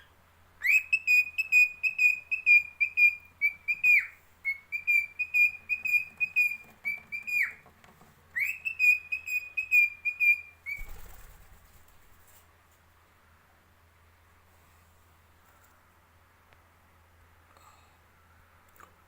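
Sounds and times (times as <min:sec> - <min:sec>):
cockatiel whistling: 0:00.0 - 0:07.6, 0:08.4 - 0:11.0.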